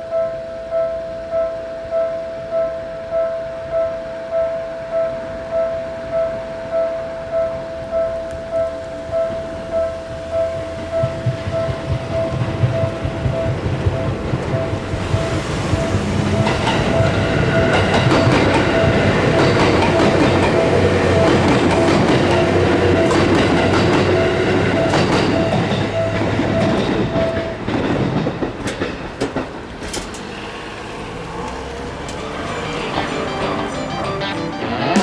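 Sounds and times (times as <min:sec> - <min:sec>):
crossing warning bell dinging: 0:00.0 - 0:31.2, 0:31.8 - 0:35.0
train wheels clacking: 0:08.6 - 0:30.4.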